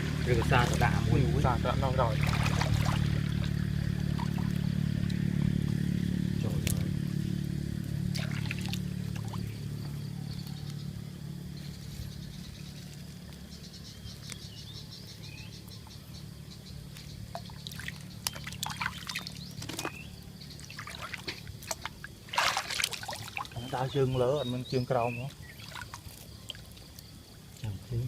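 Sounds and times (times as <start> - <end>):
sharp water splashes: 0.0 - 6.1, 7.9 - 9.8, 17.2 - 24.0, 25.3 - 27.0
water trickling and splashing: 0.0 - 10.6, 15.5 - 28.0
steady low hum: 0.0 - 28.0.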